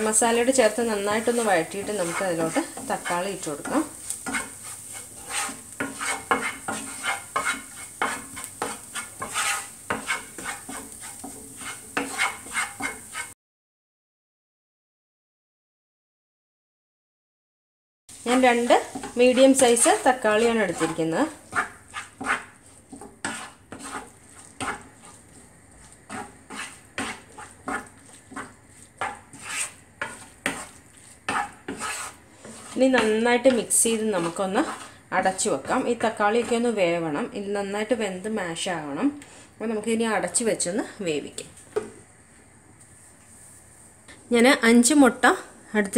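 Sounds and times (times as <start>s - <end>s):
onions sizzling in oil: 0.0s - 13.4s, 18.1s - 41.9s
spatula scraping frying pan: 0.0s - 13.4s, 18.1s - 38.0s.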